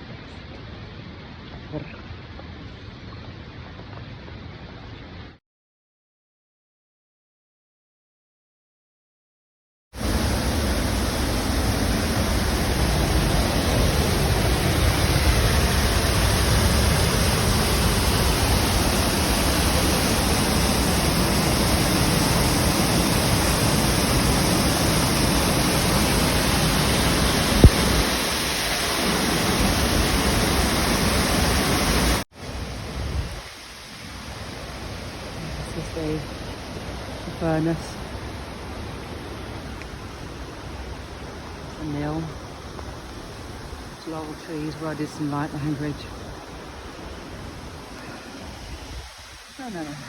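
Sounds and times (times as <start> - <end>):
waterfall rushing: 10.0 - 50.0.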